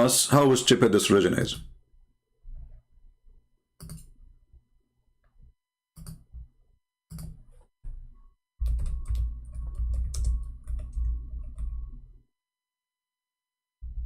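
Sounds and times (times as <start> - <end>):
typing on computer keyboard: 3.8 - 4.1, 6.0 - 6.3, 7.1 - 7.6, 8.6 - 11.8.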